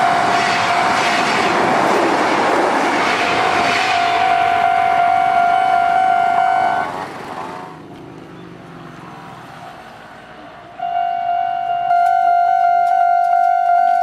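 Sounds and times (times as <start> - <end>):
level crossing warning tone: 0.0 - 1.2, 3.3 - 7.0, 10.8 - 14.0
faint train moving away: 0.0 - 12.2.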